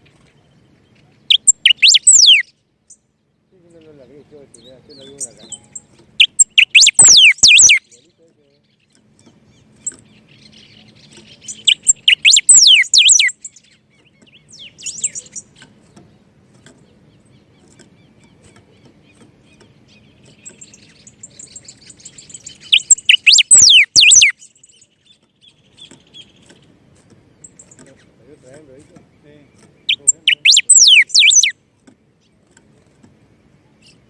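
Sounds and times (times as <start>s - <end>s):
high bird twittering: 1.0s - 3.0s, 3.7s - 15.7s, 17.2s - 26.7s, 29.0s - 31.6s
downward whistled bird notes: 1.3s - 2.5s, 5.4s - 8.0s, 11.6s - 13.3s, 22.6s - 24.4s, 29.8s - 31.5s.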